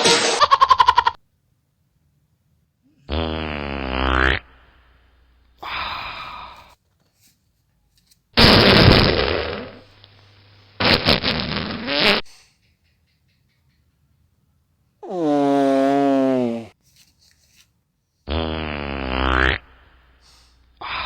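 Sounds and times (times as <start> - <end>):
dog farting: 3.1 - 4.5, 8.4 - 9.9, 10.8 - 12.3, 15.0 - 16.8, 18.3 - 19.7.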